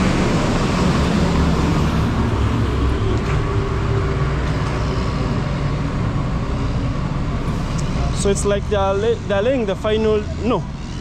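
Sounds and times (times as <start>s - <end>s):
traffic rumble: 0.0s - 11.0s
vehicle engine running nearby: 0.0s - 11.0s.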